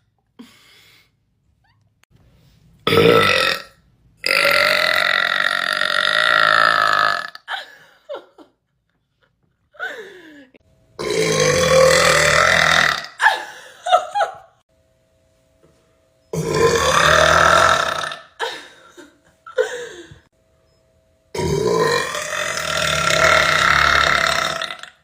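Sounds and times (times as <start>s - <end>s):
woman burping: 2.9s - 7.6s, 11.0s - 13.5s, 16.4s - 19.8s, 21.4s - 25.0s.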